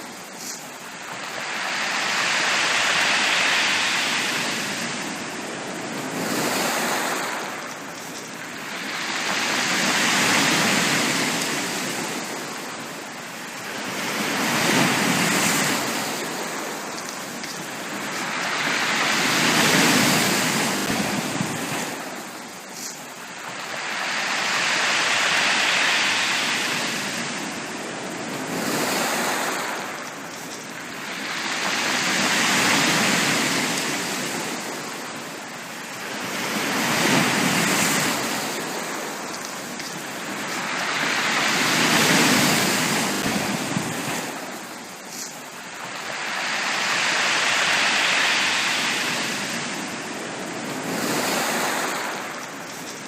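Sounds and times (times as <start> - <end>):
ocean waves breaking on beach: 0.0 - 53.0.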